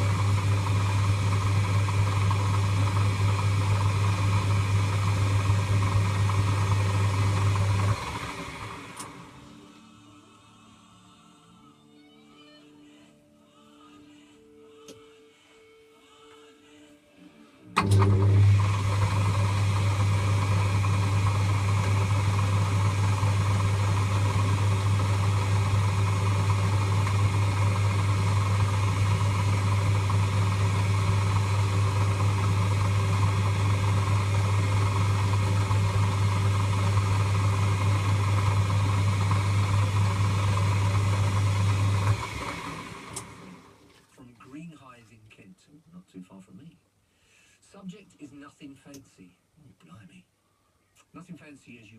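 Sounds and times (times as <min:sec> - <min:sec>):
lathe motor humming: 0:00.0 - 0:09.6, 0:17.8 - 0:43.9.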